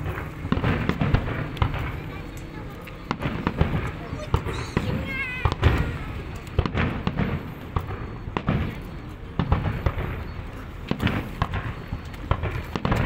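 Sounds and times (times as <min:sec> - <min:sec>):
fireworks booming and banging: 0:00.0 - 0:13.0
firework whistle: 0:03.1 - 0:13.0.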